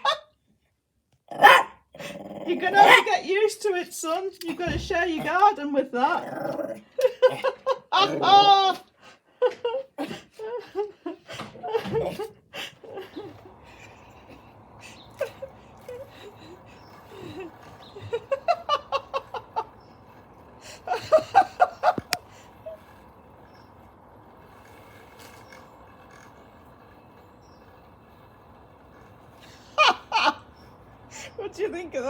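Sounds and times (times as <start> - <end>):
person laughing: 7.0 - 19.8, 20.6 - 22.8, 29.8 - 30.5.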